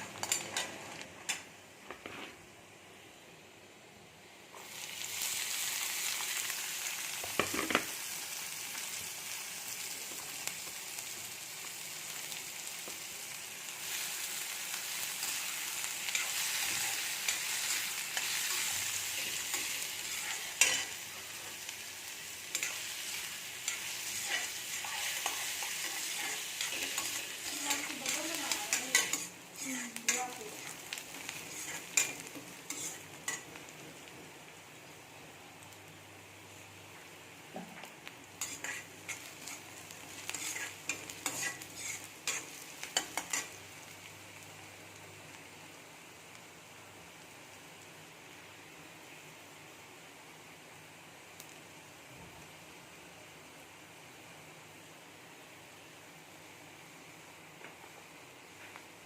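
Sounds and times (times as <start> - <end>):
food sizzling in hot oil: 0.0 - 2.5, 4.5 - 59.0
spatula scraping a pan: 16.1 - 21.2, 22.5 - 33.4, 38.4 - 43.6.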